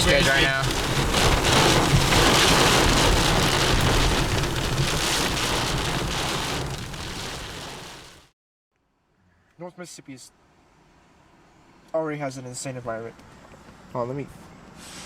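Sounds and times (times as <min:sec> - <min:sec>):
heavy rain and wind rushing: 0:00.0 - 0:08.3.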